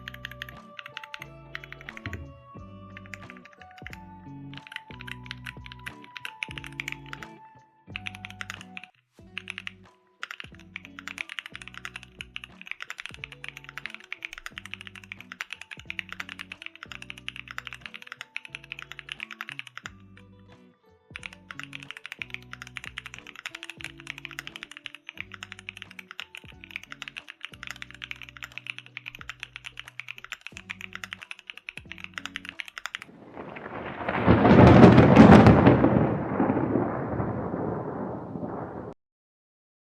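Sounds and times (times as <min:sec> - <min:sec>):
mechanical keyboard typing: 0:00.0 - 0:02.2, 0:03.0 - 0:07.3, 0:08.0 - 0:20.1, 0:21.2 - 0:33.1
background music: 0:00.0 - 0:33.1
loud rumble: 0:33.1 - 0:39.0.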